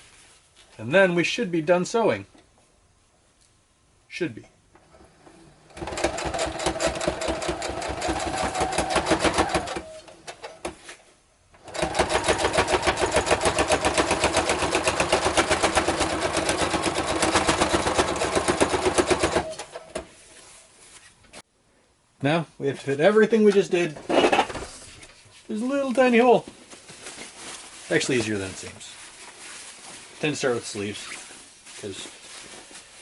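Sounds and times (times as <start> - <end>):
sewing machine stitching: 4.8 - 10.7, 11.6 - 20.0.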